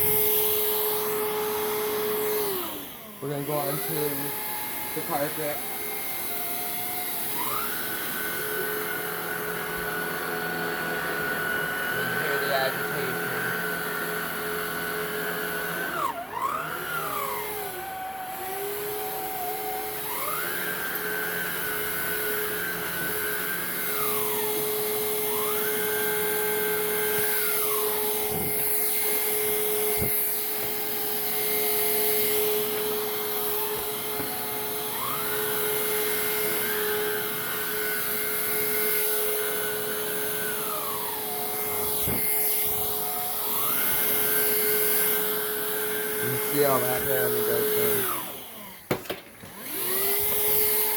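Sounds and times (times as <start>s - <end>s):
vacuum cleaner running on carpet: 0.0s - 50.9s
rising and falling motor tone: 16.0s - 46.6s.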